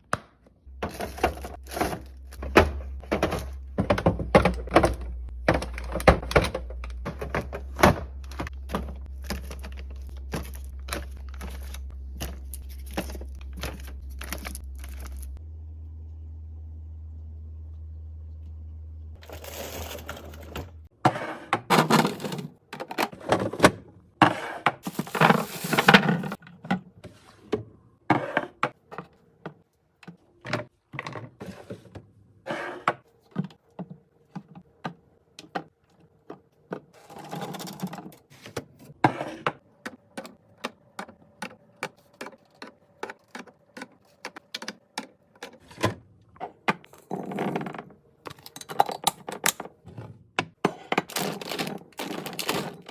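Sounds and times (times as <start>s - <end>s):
rustling handling noise: 5.2s - 15.4s, 19.2s - 20.9s.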